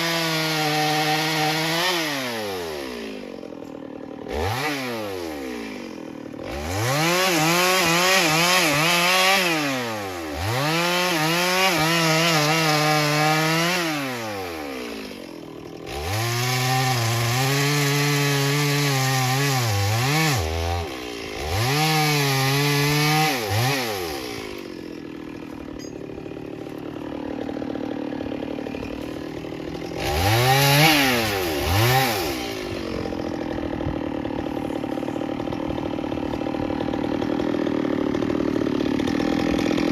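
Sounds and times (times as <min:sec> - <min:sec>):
chainsaw cutting wood: 0:00.0 - 0:39.9
chainsaw idling: 0:00.0 - 0:39.9.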